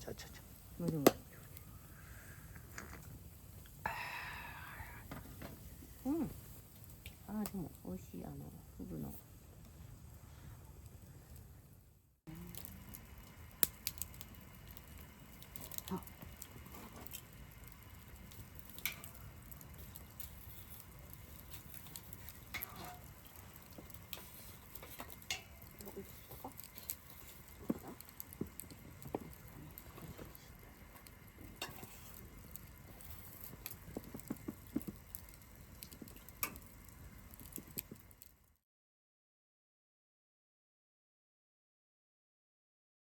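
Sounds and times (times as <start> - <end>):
rain pattering: 4.7 - 9.8, 12.3 - 38.4.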